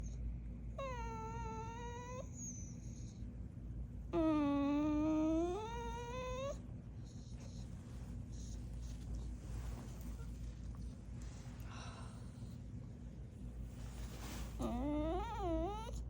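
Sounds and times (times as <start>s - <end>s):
dog whining: 0.0s - 3.3s, 4.1s - 9.1s, 14.6s - 16.0s.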